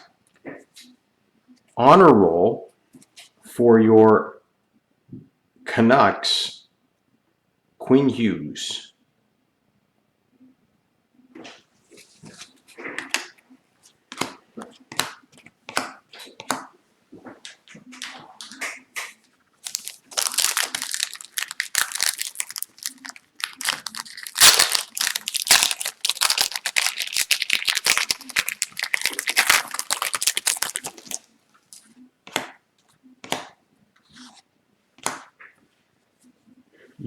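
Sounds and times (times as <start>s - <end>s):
foil wrapper tearing and crinkling: 19.6s - 31.3s.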